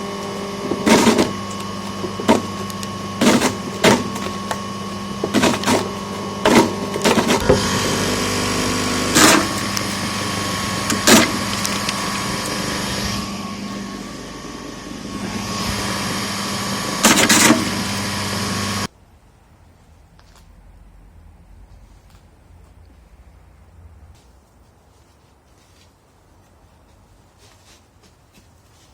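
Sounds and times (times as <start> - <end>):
apple crusher motor hum: 0.0 - 18.9.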